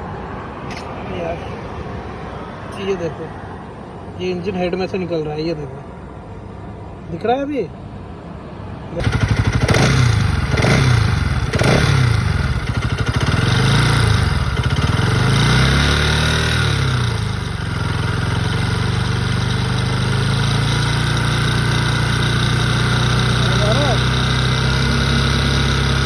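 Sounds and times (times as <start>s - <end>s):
motorcycle engine revving: 9.0s - 26.0s.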